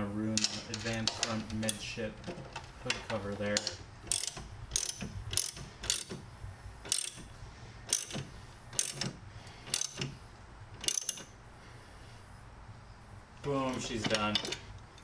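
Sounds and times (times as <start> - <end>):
hand ratchet clicking: 2.9 - 6.2, 6.8 - 7.3, 7.9 - 10.2, 10.8 - 11.3.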